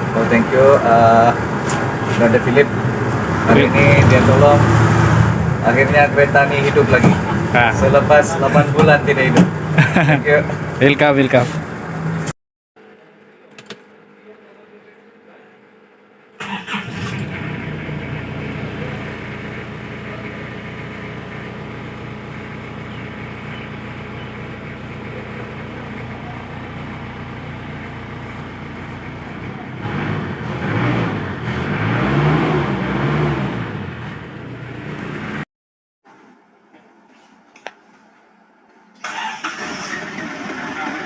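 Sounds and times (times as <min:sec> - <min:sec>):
diesel engine running and revving: 0:00.0 - 0:12.3, 0:16.5 - 0:35.5, 0:39.6 - 0:41.0.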